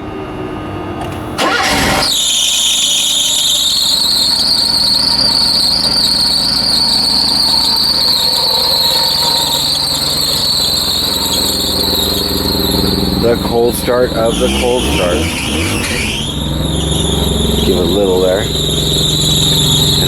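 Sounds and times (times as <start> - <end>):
car engine starting and running: 0.6 - 20.0
squeaking drive belt squeal: 1.0 - 20.0.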